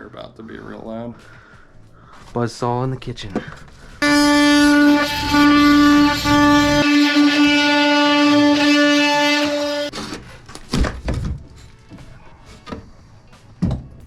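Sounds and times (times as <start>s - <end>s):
power saw whining: 4.0s - 9.9s.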